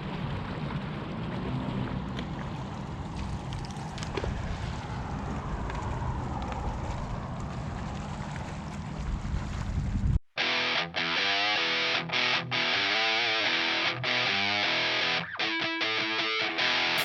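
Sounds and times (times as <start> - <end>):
open-water noise: 0.0 - 10.2
wind buffeting microphone: 0.0 - 10.2.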